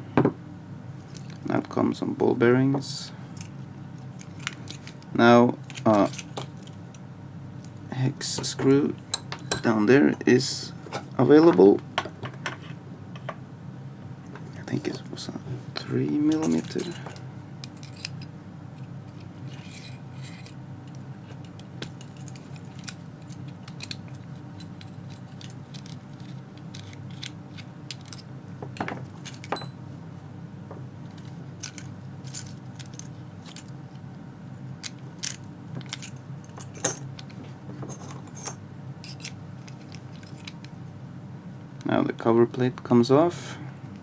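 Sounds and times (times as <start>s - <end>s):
steady low hum: 0.0s - 44.0s
metal parts clinking: 5.6s - 6.8s, 16.2s - 29.8s, 31.1s - 33.8s, 34.8s - 40.7s.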